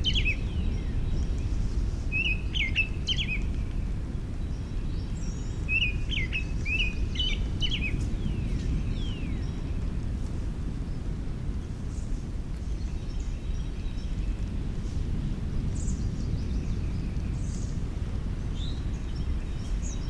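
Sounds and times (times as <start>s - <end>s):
songbird singing: 0.0s - 20.0s
steady low rumble: 0.0s - 20.0s.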